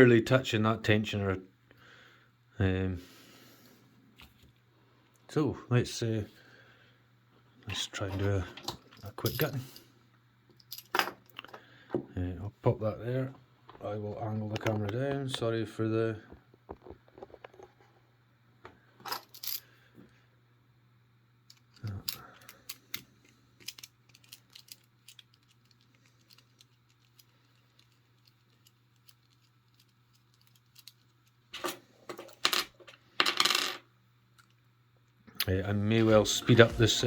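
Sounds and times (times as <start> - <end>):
padlock parts clicking and clinking: 21.5 - 32.8.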